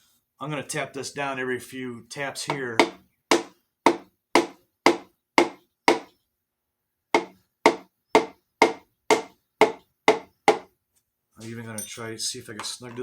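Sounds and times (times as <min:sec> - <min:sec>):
mallet tapping a piston: 0:02.8 - 0:06.1, 0:07.2 - 0:10.7.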